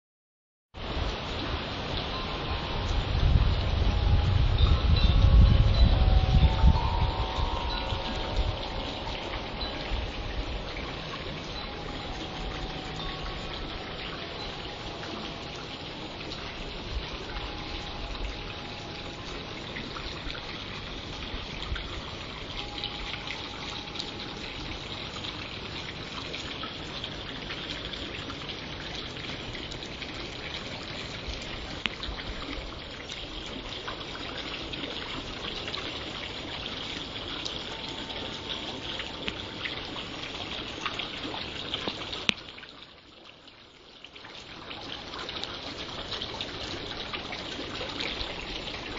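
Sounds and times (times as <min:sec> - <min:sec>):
wind blowing: 0:00.8 - 0:27.4.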